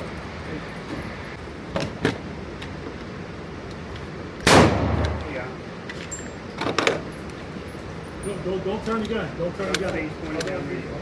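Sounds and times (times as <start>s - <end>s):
loud gunshot with ringing decay: 4.4s - 5.4s.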